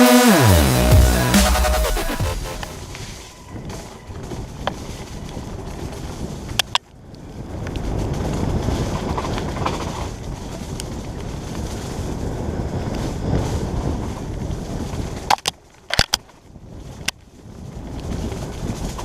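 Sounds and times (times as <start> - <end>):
mountain bike rattling on trail: 3.3 - 19.0.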